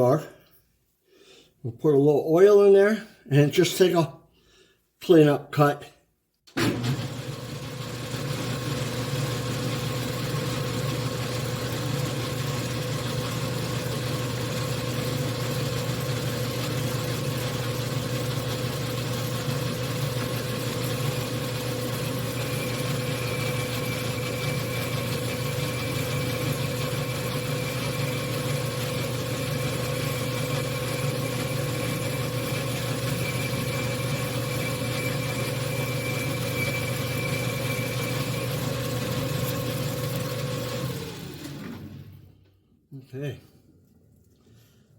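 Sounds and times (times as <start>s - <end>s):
lathe running: 6.7s - 42.0s
boring bar cutting metal: 9.9s - 41.1s.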